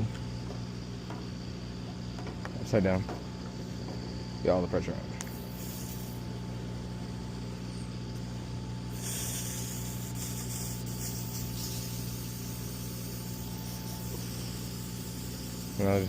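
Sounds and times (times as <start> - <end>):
machinery hum: 0.0 - 16.0
sprayer hissing: 5.2 - 6.3, 8.9 - 16.0.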